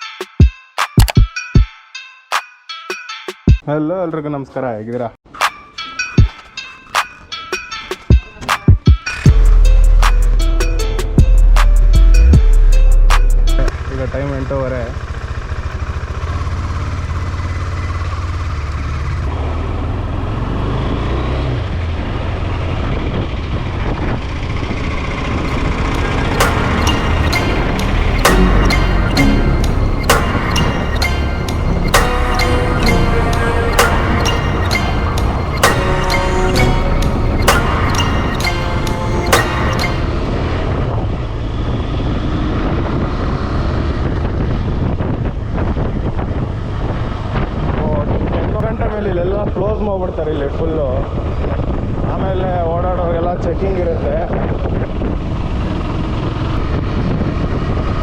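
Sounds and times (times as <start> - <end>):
sharp click: 0.8 - 1.2
motorcycle engine running: 13.7 - 20.6, 21.4 - 32.9
motorcycle engine droning: 13.7 - 58.0
wind noise on microphone: 21.7 - 26.0, 40.2 - 58.0
rushing noise: 25.4 - 41.1.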